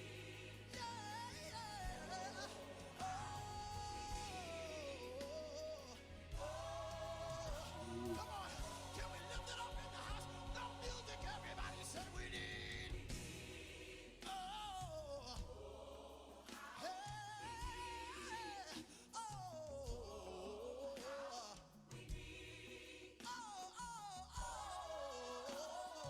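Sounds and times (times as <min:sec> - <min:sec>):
person singing: 0:00.7 - 0:13.1.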